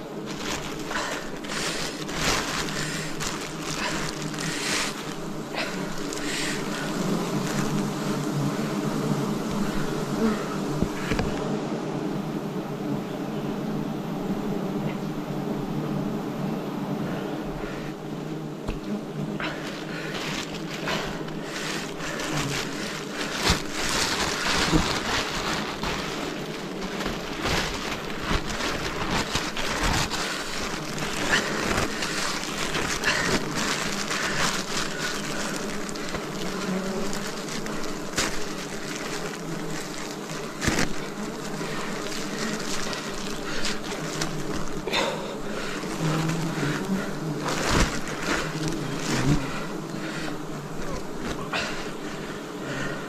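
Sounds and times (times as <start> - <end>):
bees buzzing: 0.0 - 53.0
knocks and crackles: 19.5 - 49.4.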